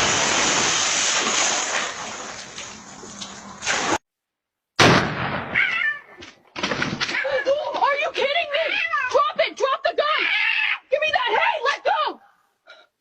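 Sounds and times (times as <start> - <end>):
rushing water: 0.0 - 4.0.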